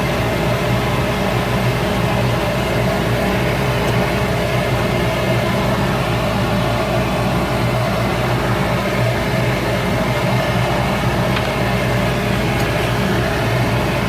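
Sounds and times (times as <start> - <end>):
wood lathe motor humming: 5.3 - 14.0.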